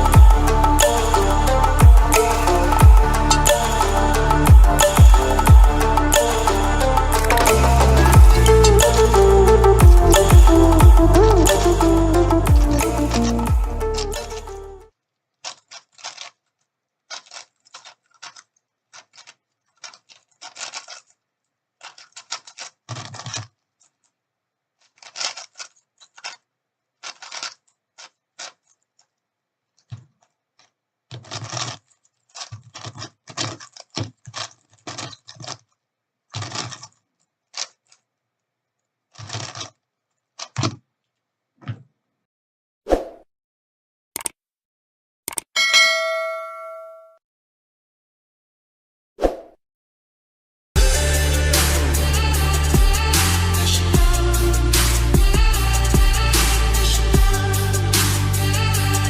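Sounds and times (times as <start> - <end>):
speedcube plastic clacking: 15.4 - 24.2, 24.8 - 38.1, 39.1 - 40.9.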